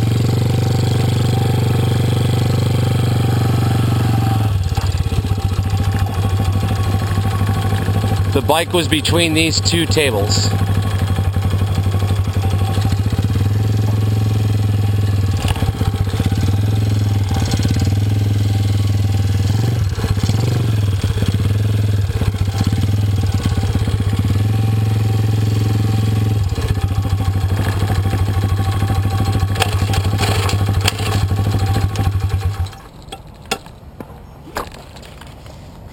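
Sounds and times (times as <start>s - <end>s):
engine running with clatter: 0.0s - 33.7s.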